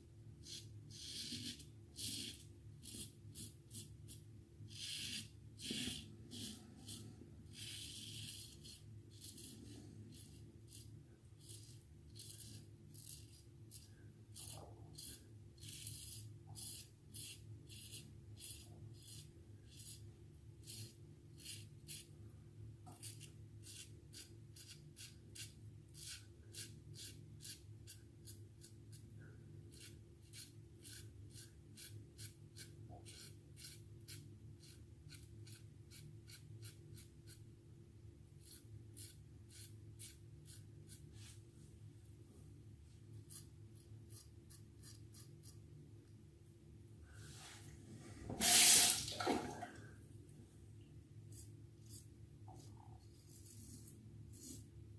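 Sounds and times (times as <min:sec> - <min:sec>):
faint steady hum: 0:00.0 - 0:54.9
razor scraping stubble: 0:04.8 - 0:20.0, 0:43.2 - 0:45.6, 0:51.3 - 0:54.7.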